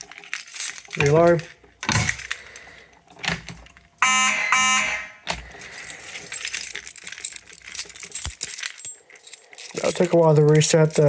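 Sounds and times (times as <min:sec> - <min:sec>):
fire alarm horn blasts: 0:04.0 - 0:05.2.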